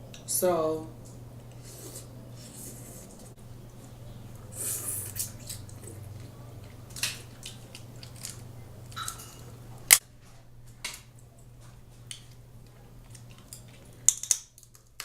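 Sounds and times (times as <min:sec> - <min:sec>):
chewing: 0:03.1 - 0:09.4, 0:12.2 - 0:14.9
crab legs cracking: 0:05.1 - 0:10.0, 0:12.0 - 0:15.0.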